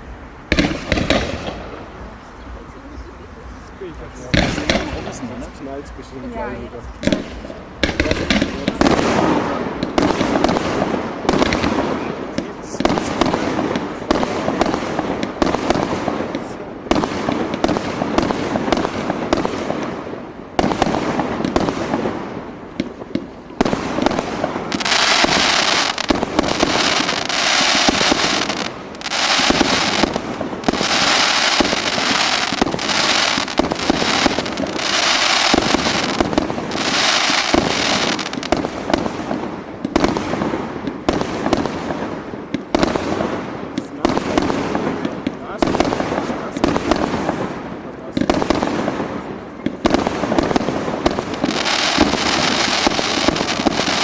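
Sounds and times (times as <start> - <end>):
fireworks bursting: 0.0 - 54.0
high hissing crackle: 20.7 - 39.9.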